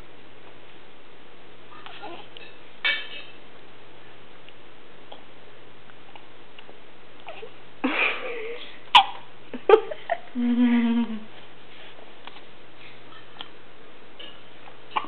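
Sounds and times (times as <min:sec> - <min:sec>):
baby hiccuping: 0:08.9 - 0:09.3.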